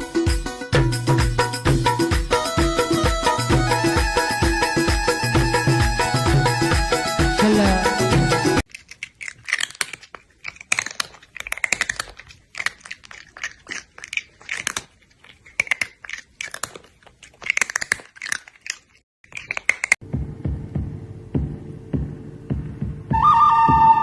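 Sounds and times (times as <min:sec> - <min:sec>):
crunchy chewing: 0:08.6 - 0:20.0.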